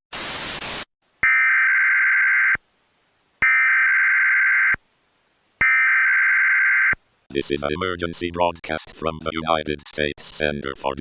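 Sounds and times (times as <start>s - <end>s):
burst of static: 0.1s - 0.9s.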